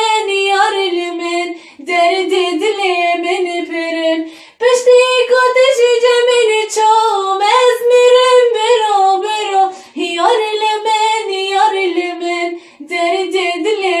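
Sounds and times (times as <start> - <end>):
person singing unaccompanied: 0.0 - 14.0
breaths: 1.5 - 1.8, 4.2 - 4.6, 9.7 - 10.0, 12.5 - 12.9.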